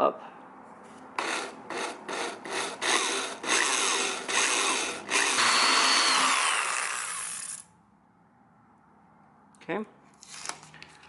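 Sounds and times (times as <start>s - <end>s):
power drill boring through sheet metal: 1.2s - 7.7s.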